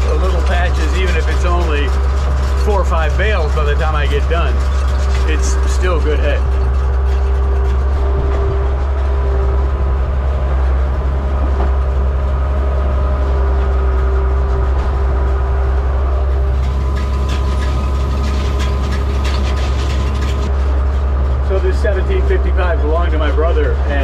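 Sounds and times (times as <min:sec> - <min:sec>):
steady engine whine: 0:00.0 - 0:24.0
tractor engine drone: 0:00.0 - 0:24.0.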